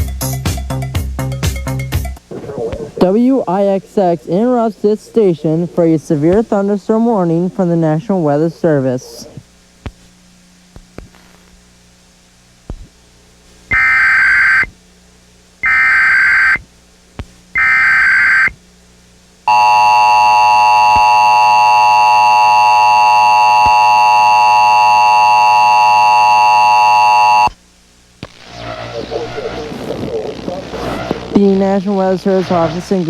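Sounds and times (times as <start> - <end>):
shrill digital data bursts: 13.7 - 14.7, 15.6 - 16.6, 17.6 - 18.6
two-tone attention signal: 15.6 - 16.6, 17.6 - 18.6, 19.5 - 27.5.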